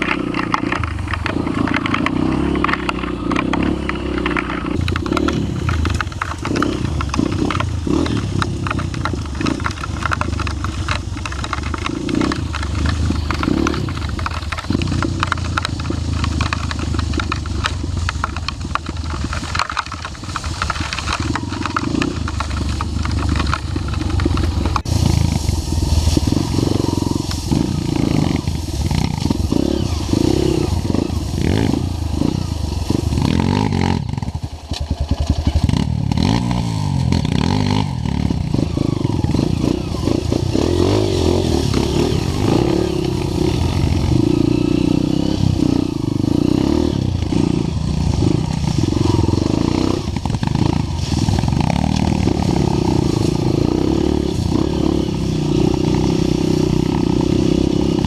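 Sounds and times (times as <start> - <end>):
motorcycle engine running: 0.0 - 58.0.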